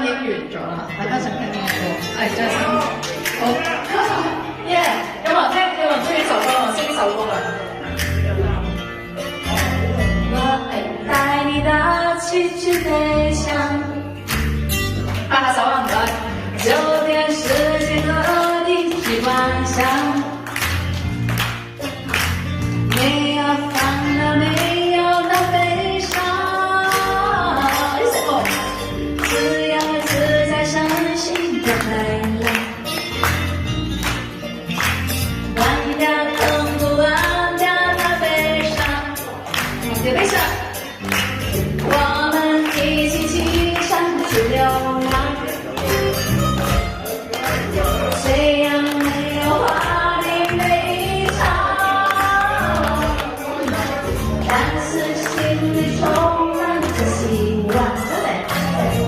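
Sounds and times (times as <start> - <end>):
woman singing pop ballad: 10.2 - 14.4, 15.3 - 20.8, 22.8 - 33.0, 35.4 - 40.8, 41.4 - 46.2, 48.1 - 59.0
band with steady beat: 44.3 - 50.1.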